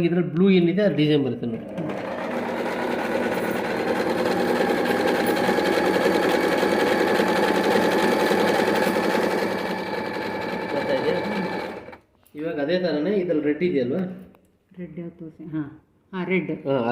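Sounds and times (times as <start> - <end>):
electric sewing machine running: 1.6 - 12.0.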